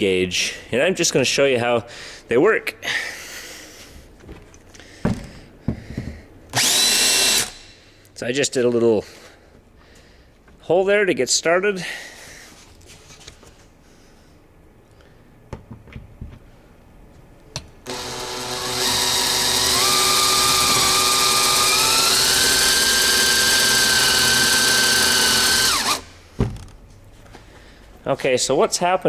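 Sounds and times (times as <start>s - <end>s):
power drill whining: 6.5s - 7.6s, 17.8s - 26.1s.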